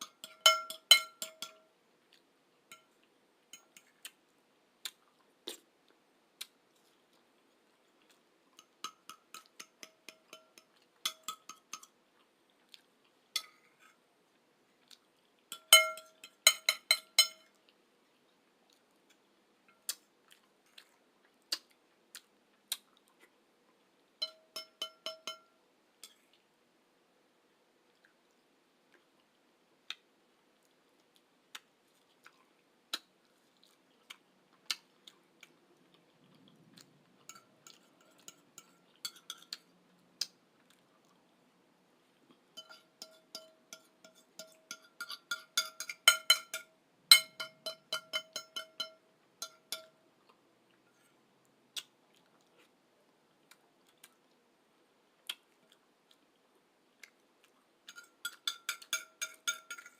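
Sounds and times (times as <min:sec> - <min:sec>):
utensil clinking on dish: 0:00.0 - 0:01.6, 0:15.5 - 0:17.5, 0:24.2 - 0:25.5, 0:42.6 - 0:50.0, 0:57.9 - 0:59.9
soft chewing: 0:00.0 - 0:26.6, 0:27.3 - 0:59.9.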